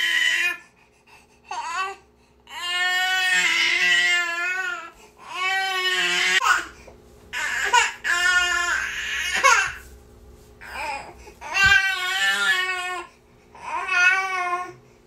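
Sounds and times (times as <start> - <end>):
baby crying: 1.5 - 6.8, 7.4 - 9.8, 10.6 - 14.8.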